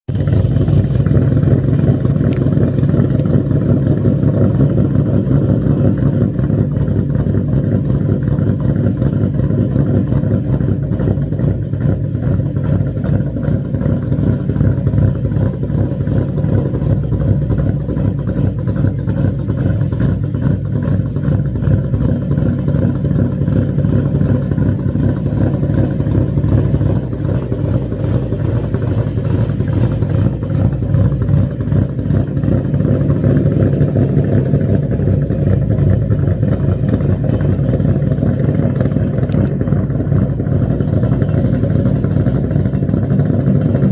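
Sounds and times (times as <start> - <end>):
car engine rough idle: 0.0 - 43.9.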